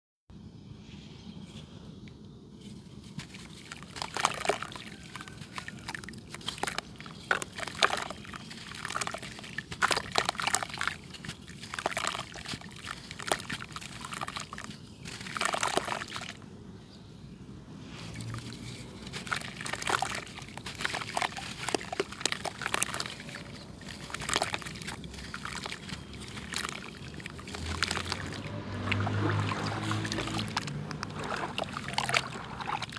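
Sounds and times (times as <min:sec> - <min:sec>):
clay crumbling and crunching: 0:18.3 - 0:28.4.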